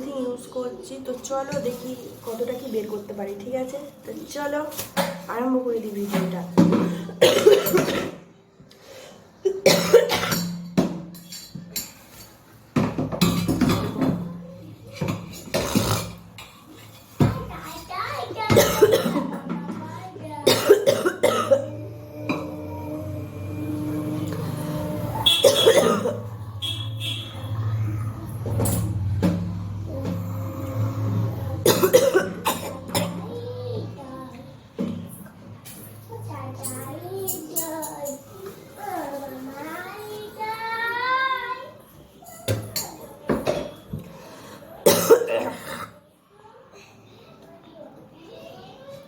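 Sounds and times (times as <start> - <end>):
woman coughing: 7.1 - 8.2, 9.5 - 10.4, 18.6 - 19.4, 20.4 - 21.8, 25.2 - 26.3, 31.6 - 33.2, 44.8 - 46.0.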